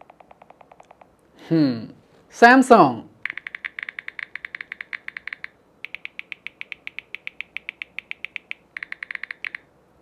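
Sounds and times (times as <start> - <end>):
phone keyboard typing ticks: 0.0 - 1.1, 3.2 - 9.7.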